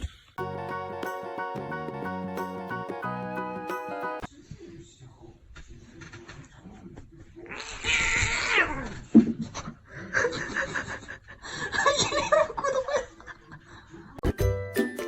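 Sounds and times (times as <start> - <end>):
bright jingly music: 0.4 - 4.3, 14.3 - 15.0.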